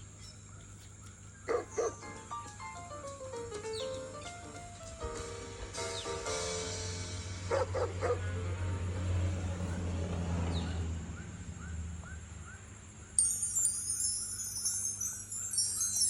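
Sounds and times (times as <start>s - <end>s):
dog yipping: 1.5s - 2.0s, 7.5s - 8.3s
faint chirps: 11.6s - 16.0s
tinkling chime-like tones: 13.2s - 16.0s.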